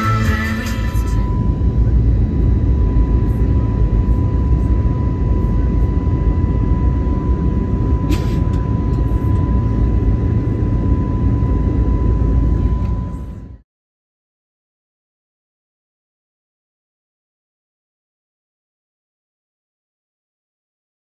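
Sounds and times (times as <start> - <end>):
airliner cabin rumble: 0.0 - 13.6.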